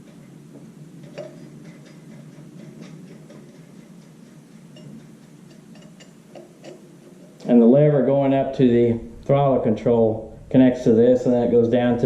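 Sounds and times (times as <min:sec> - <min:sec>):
metallic clicks and clinks: 0:01.0 - 0:06.9.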